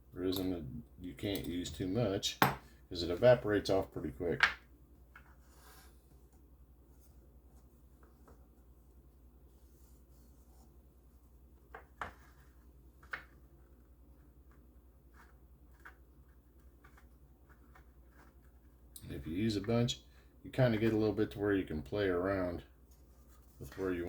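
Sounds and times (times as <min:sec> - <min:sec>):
soft rubbing of plastic: 0:05.0 - 0:19.0, 0:22.6 - 0:24.0.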